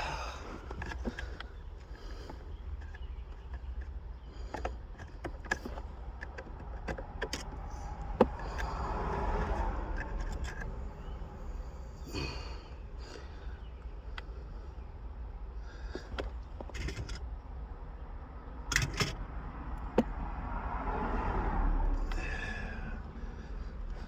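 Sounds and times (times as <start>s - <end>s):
plastic parts clicking and rattling: 0.0s - 11.2s, 15.9s - 17.4s, 18.6s - 20.2s.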